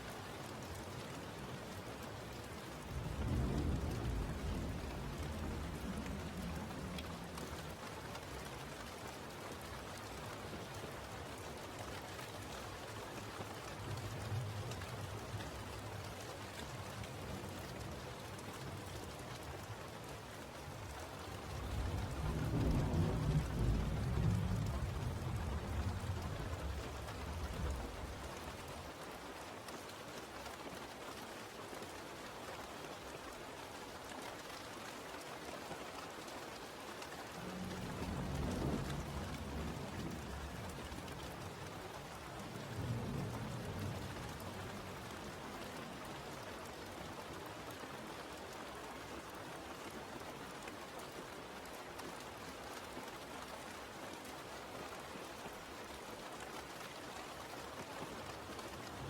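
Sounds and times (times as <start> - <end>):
steady rain falling: 0.0 - 59.0
low thunder rumbles: 2.8 - 8.5, 21.4 - 28.7, 37.3 - 46.0.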